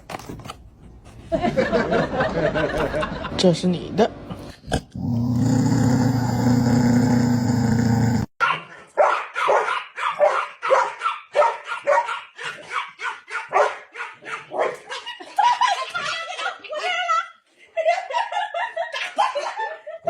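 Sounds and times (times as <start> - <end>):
dog barking: 8.4 - 15.0.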